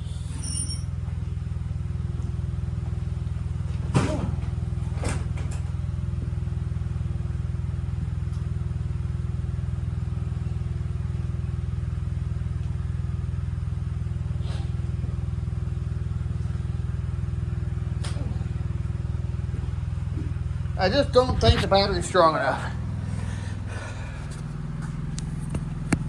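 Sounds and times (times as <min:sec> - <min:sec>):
lawn tractor engine droning: 0:20.7 - 0:26.0.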